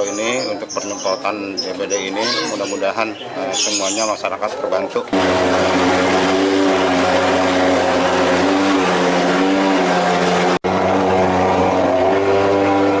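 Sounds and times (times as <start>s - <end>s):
fogging machine engine drone: 5.1s - 13.0s.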